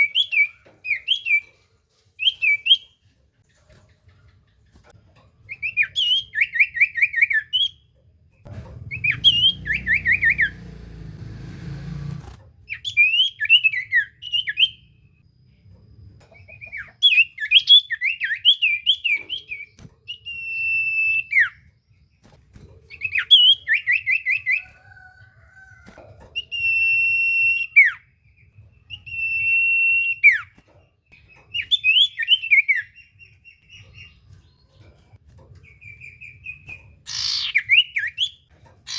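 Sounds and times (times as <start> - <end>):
low rumble: 8.5 - 12.4
bird singing chattering and whistles: 16.3 - 21.6, 22.9 - 24.6, 31.5 - 34.2, 35.6 - 38.9.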